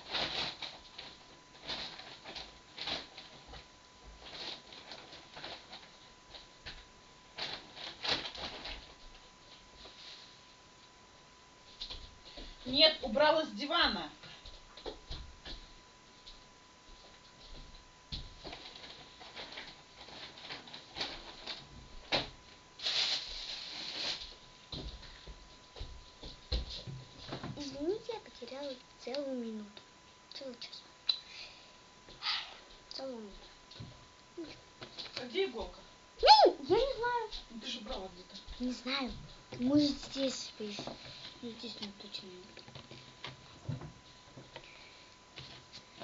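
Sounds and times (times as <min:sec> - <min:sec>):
paper rustling: 0:00.0 - 0:06.5, 0:18.4 - 0:21.8, 0:22.8 - 0:24.4
rustling of small things: 0:00.0 - 0:10.9, 0:11.6 - 0:30.7, 0:32.6 - 0:46.0.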